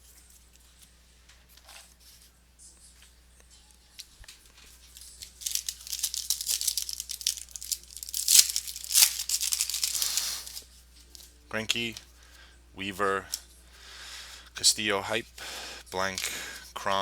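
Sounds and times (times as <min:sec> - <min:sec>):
wrapper tearing and crinkling: 0:05.0 - 0:10.6.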